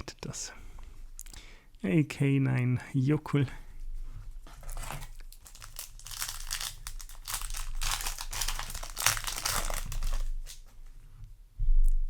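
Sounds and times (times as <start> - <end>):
foil wrapper crinkling: 4.6 - 10.7.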